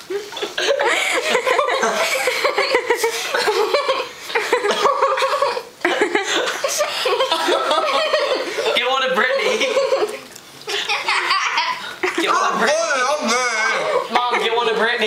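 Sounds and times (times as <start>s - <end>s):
teenagers laughing: 0.0s - 12.7s, 13.7s - 15.0s
people talking: 8.6s - 10.0s, 10.9s - 15.0s.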